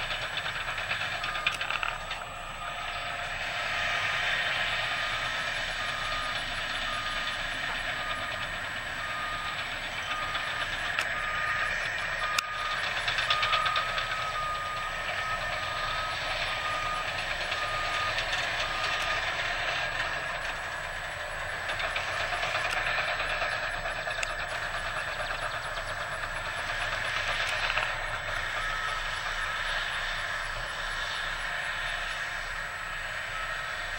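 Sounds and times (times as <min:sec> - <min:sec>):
machine engine running: 0:00.0 - 0:33.9
backup alarm beeping: 0:04.8 - 0:31.2.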